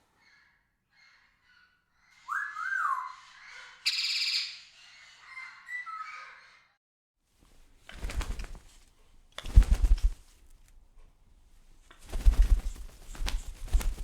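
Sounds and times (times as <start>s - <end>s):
parrot whistling: 2.3s - 3.2s, 3.8s - 4.6s.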